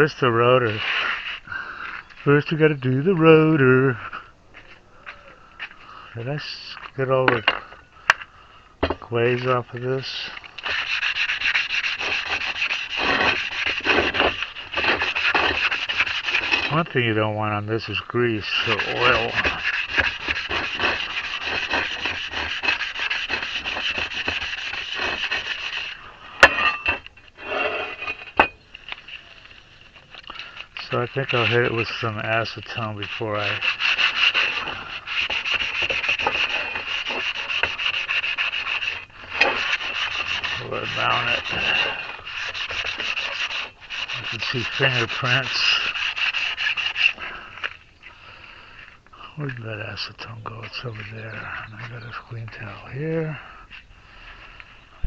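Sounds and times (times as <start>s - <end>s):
rubbing strokes on metal: 0.0s - 1.5s, 8.8s - 47.8s
abrasive scuffing brake rotor: 26.4s - 29.4s.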